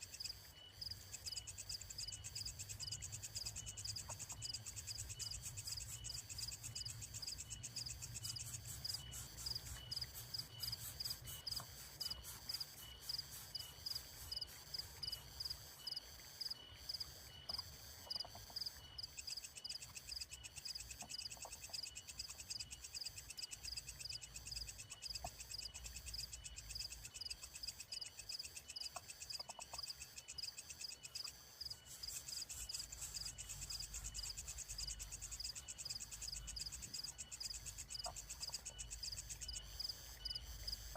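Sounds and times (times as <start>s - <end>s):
insects chirping: 0.0s - 40.9s
fast buzzy insect trill: 4.4s - 16.0s.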